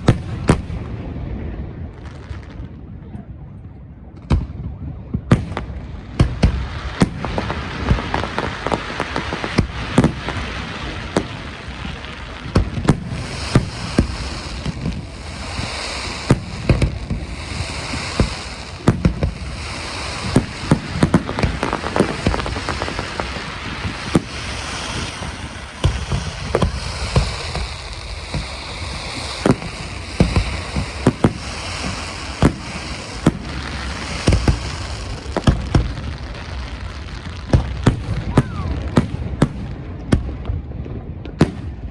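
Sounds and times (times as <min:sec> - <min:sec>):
fireworks crackling: 0:00.0 - 0:02.8, 0:04.4 - 0:41.9
fireworks booming: 0:00.0 - 0:41.9.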